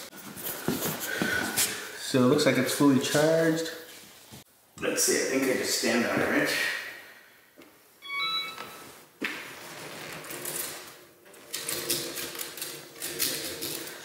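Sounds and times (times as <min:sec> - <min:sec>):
two-note electronic beep: 0:08.0 - 0:08.8.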